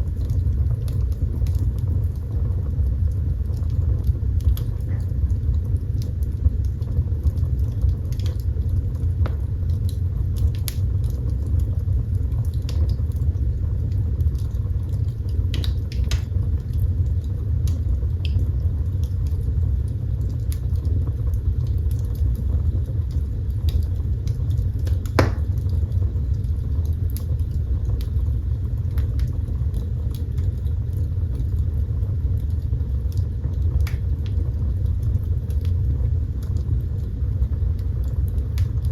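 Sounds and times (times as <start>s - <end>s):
fire crackling and popping: 0.0s - 38.9s
roar of fire flames: 0.0s - 38.9s.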